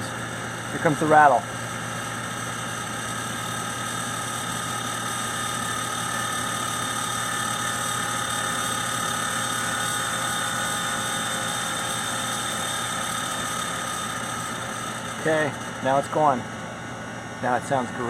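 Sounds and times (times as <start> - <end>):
air conditioner unit humming: 0.0 - 18.0
high whine: 12.7 - 18.0.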